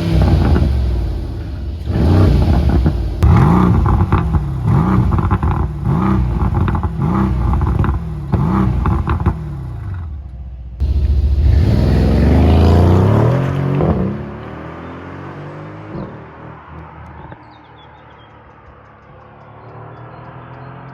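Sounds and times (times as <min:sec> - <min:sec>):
car engine revving: 0:00.0 - 0:10.2, 0:10.8 - 0:20.9
exhaust crackles: 0:00.0 - 0:14.0.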